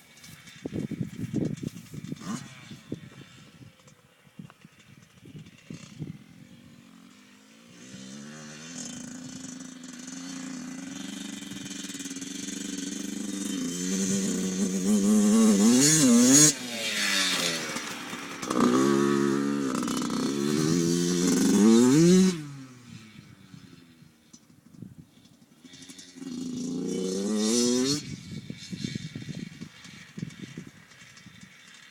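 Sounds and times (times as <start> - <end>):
dirt bike engine revving: 0.0 - 24.3, 25.1 - 31.9.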